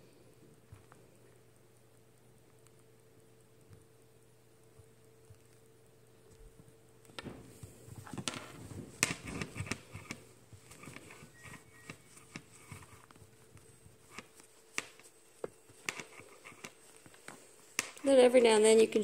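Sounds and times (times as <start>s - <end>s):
cloth rubbing on phone screen: 7.4s - 19.0s.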